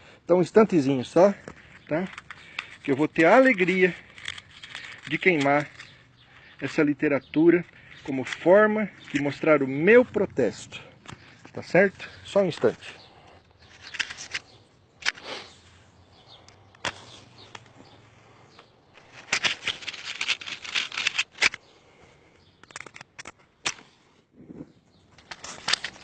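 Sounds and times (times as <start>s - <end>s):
rustling: 0.9s - 26.0s
handling clicks and knocks: 1.2s - 15.2s, 18.5s - 21.6s, 22.6s - 23.8s.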